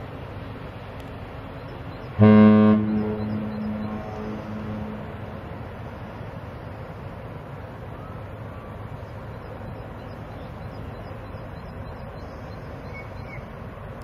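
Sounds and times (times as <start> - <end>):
deep ship horn blast: 2.2 - 6.0.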